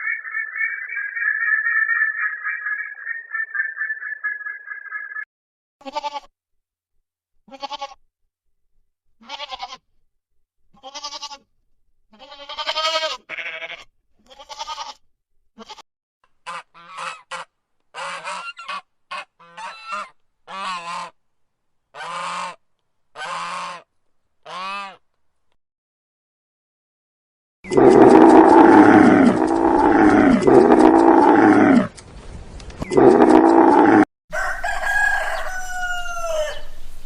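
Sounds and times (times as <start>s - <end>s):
farm animal calling: 0.0s - 5.2s, 27.7s - 31.9s, 32.8s - 36.8s.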